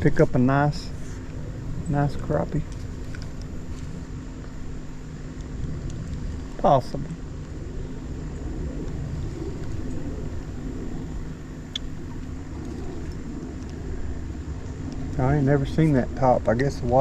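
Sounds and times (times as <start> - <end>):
wind on microphone: 0.0 - 17.0.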